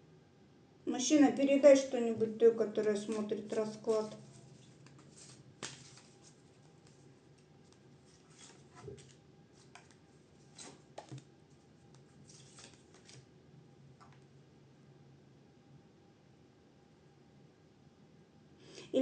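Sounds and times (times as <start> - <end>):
cards being handled: 2.9 - 13.2
soft card snaps: 4.8 - 6.0.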